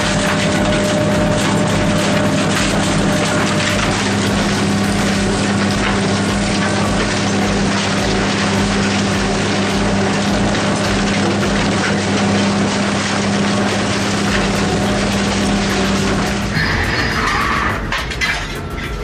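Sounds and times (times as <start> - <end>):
heavy machine running: 0.0 - 19.0
constant low hum: 13.4 - 19.0.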